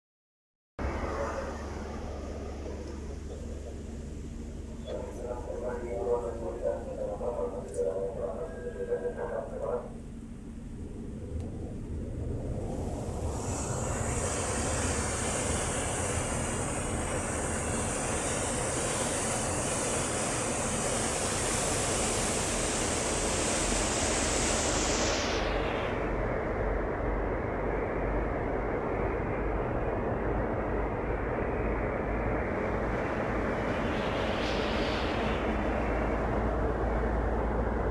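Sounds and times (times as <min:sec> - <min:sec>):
boat engine rumble: 0:00.8 - 0:37.9
water rushing along hull: 0:12.0 - 0:37.9
high hiss: 0:13.3 - 0:26.1, 0:32.9 - 0:37.8.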